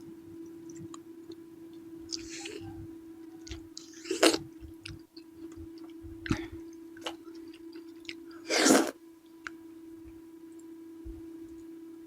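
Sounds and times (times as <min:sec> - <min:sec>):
steady hum: 0:00.0 - 0:12.0
chewing and mouth clicks: 0:03.4 - 0:08.3.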